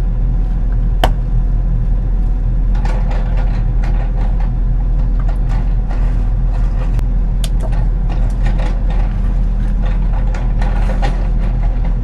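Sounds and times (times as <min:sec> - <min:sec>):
excavator diesel engine running: 0:00.0 - 0:12.0.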